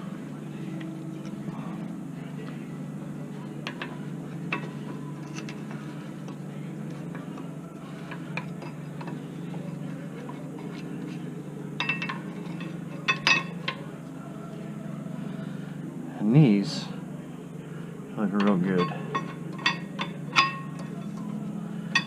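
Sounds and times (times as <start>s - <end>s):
steady low hum: 0.0s - 22.0s
metal clinks and scrapes: 3.6s - 13.9s, 18.4s - 22.0s.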